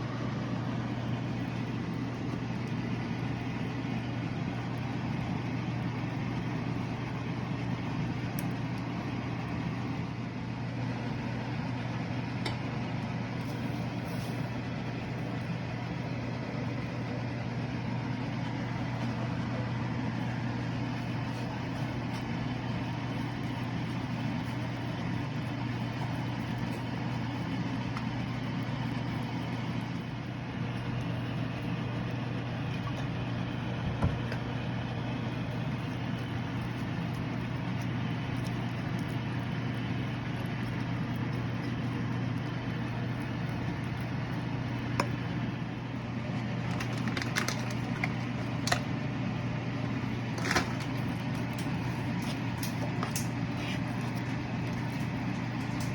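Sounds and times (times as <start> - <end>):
low mechanical hum: 0.0 - 55.9.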